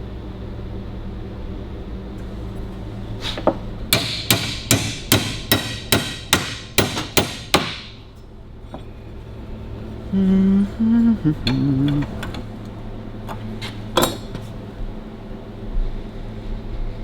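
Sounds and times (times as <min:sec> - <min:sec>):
steady hum: 0:00.0 - 0:17.0
hammer striking metal bar: 0:03.9 - 0:08.0.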